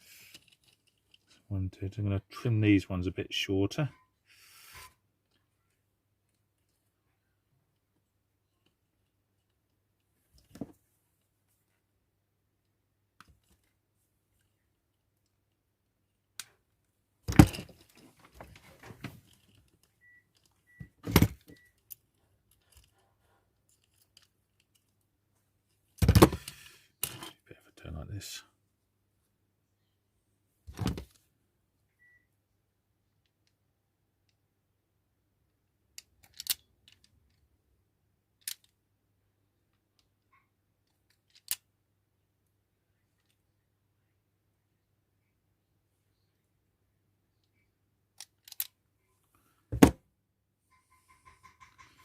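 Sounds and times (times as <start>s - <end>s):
light clicks of parts: 21.4s - 25.1s, 36.0s - 37.5s, 38.4s - 38.8s, 39.7s - 41.6s, 48.2s - 49.4s.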